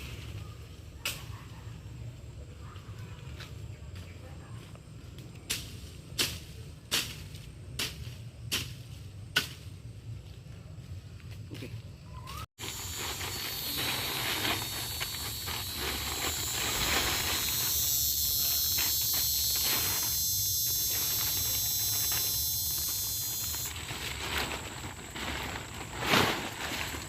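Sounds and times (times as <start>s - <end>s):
shrill insect chorus: 12.0s - 27.0s
rustling: 12.6s - 27.0s.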